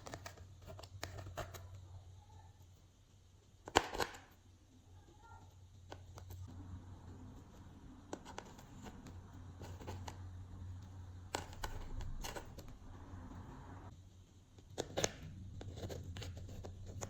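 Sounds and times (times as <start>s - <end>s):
steady low hum: 4.3s - 17.0s.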